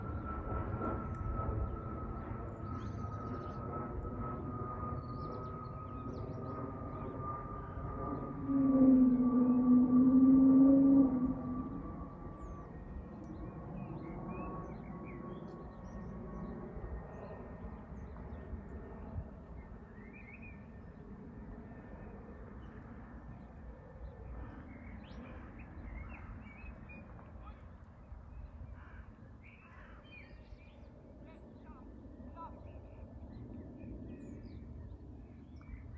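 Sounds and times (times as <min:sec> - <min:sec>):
steady low rumble: 0:00.0 - 0:14.4
aircraft rumble with high whine: 0:00.0 - 0:35.9
loud low droning tone: 0:06.1 - 0:13.0.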